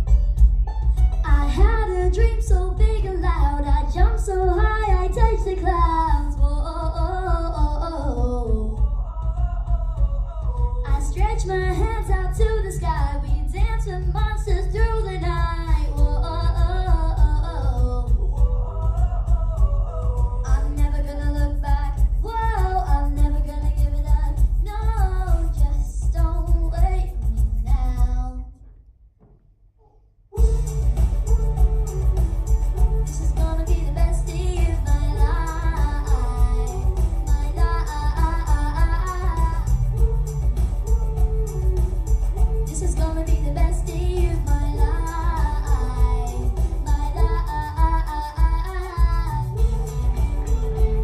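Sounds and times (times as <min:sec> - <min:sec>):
backing music with steady beat: 0:00.0 - 0:28.5, 0:30.4 - 0:51.0
girl singing through pa system: 0:01.3 - 0:28.4, 0:30.4 - 0:51.0
heavy low rumble: 0:30.4 - 0:51.0.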